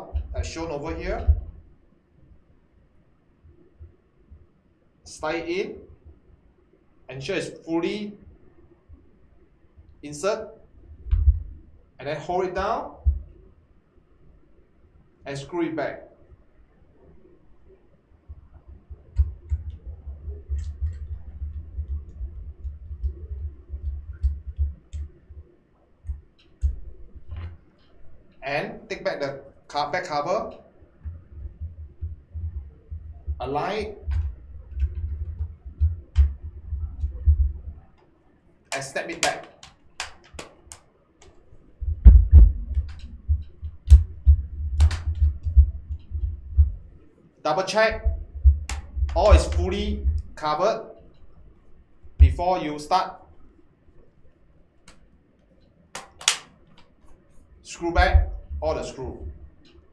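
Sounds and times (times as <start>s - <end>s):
plastic clips snapping: 38.7s - 41.4s, 56.0s - 56.9s
screwdriver clicking: 56.0s - 56.5s.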